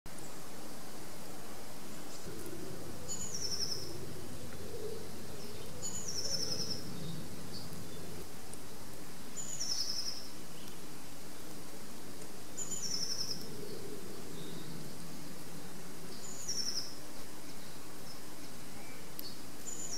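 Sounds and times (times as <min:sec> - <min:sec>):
faint bird calls: 0:01.9 - 0:08.2.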